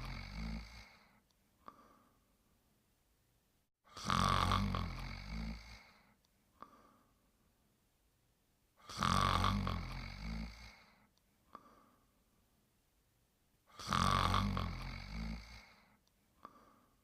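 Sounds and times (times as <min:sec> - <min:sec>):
person snoring: 0:00.0 - 0:02.0, 0:03.9 - 0:06.9, 0:08.8 - 0:11.9, 0:13.7 - 0:16.9.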